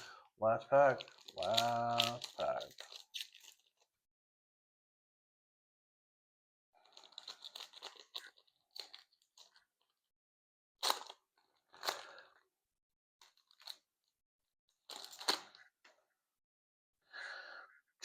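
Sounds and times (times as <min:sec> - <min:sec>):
cards crinkling when handled: 0:00.0 - 0:03.9, 0:06.8 - 0:09.9, 0:10.8 - 0:12.3, 0:13.2 - 0:13.8, 0:14.8 - 0:15.7
wrapper tearing and crumpling: 0:00.8 - 0:03.9, 0:06.8 - 0:09.6, 0:10.8 - 0:12.2, 0:13.3 - 0:13.8, 0:14.8 - 0:15.7.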